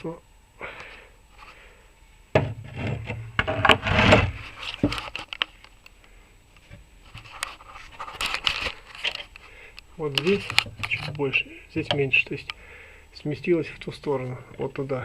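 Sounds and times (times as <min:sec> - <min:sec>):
knock: 0:02.4 - 0:02.8.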